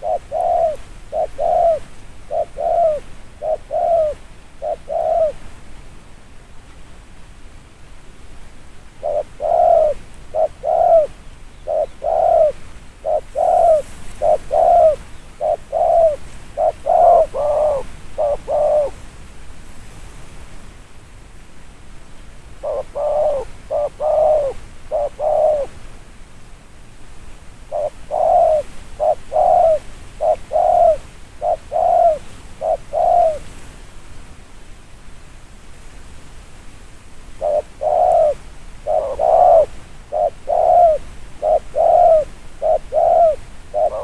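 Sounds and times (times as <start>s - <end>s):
dove cooing: 0.0s - 5.4s, 9.0s - 19.0s, 22.6s - 25.8s, 27.7s - 33.5s, 37.4s - 44.0s.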